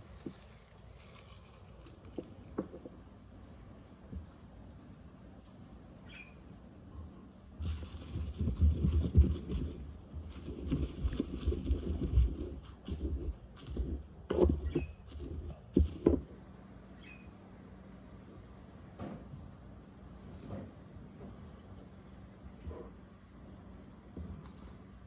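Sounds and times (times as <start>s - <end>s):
handling noise rubbing and knocking: 0.0s - 4.6s, 7.6s - 16.4s.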